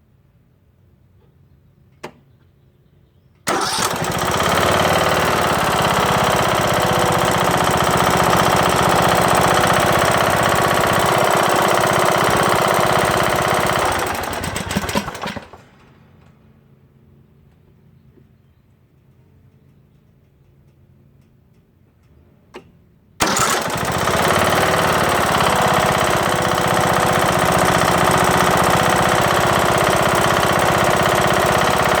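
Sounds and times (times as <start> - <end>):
engine knocking: 3.5 - 15.8, 23.2 - 32.0
lawn tractor engine running: 3.5 - 16.3, 23.2 - 32.0
click: 19.0 - 22.7.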